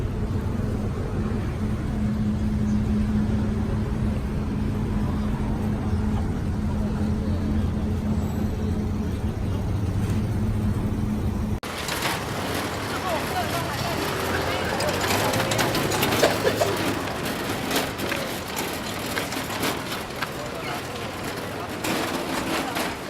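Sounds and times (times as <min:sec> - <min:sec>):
low mechanical drone: 0:00.0 - 0:13.0.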